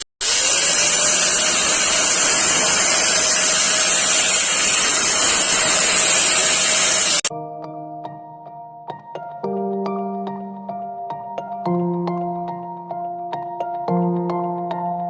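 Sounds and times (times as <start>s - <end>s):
drill grinder grinding: 0.0s - 7.3s
drill motor whine: 0.0s - 7.3s.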